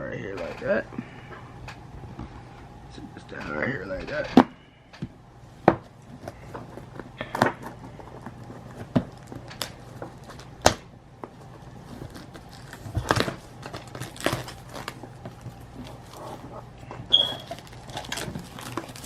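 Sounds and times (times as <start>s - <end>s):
packaging knocks and scrapes: 5.7s - 19.0s
packaging rustling: 5.8s - 19.0s.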